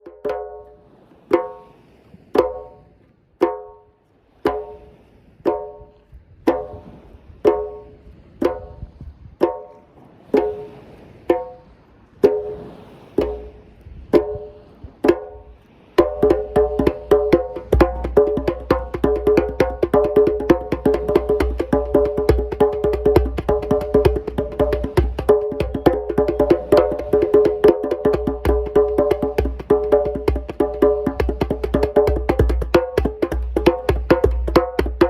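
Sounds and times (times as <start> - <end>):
djembe strokes: 11.3 - 11.6, 13.2 - 13.6, 16.0 - 35.0.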